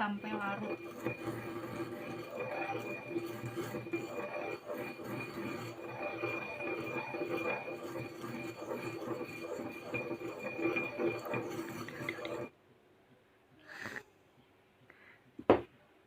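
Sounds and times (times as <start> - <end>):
pestle grinding in a mortar: 0.0 - 12.5.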